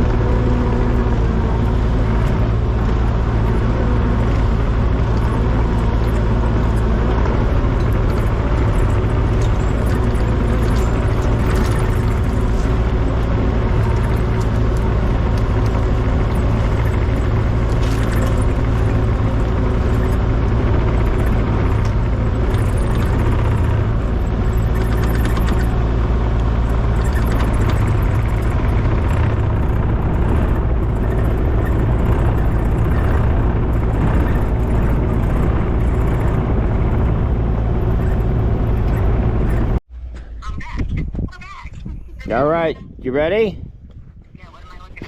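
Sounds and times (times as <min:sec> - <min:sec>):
engine running steadily: 0:00.0 - 0:45.0.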